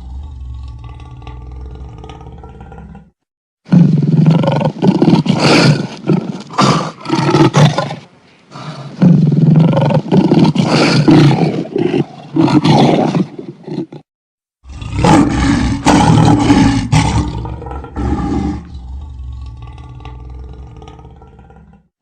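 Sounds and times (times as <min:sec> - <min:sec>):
lion roaring: 0:00.0 - 0:07.9, 0:14.6 - 0:21.9.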